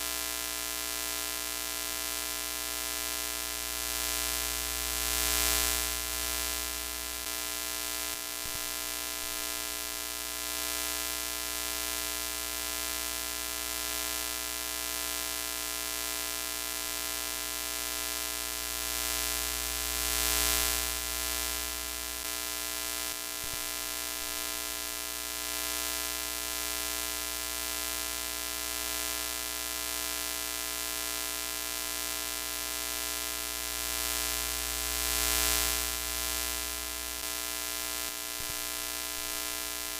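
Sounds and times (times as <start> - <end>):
electric buzz: 33.0 - 39.9.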